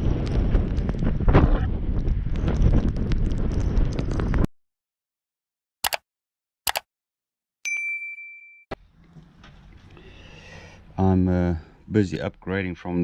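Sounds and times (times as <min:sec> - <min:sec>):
wind on microphone: 0:00.0 - 0:04.5
short clicks: 0:05.8 - 0:06.0, 0:06.7 - 0:06.9
clear ringing tone: 0:07.6 - 0:08.8.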